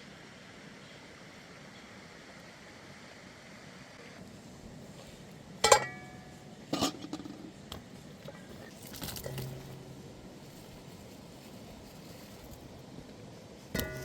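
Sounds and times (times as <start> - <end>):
outdoor background noise: 0.0 - 14.0.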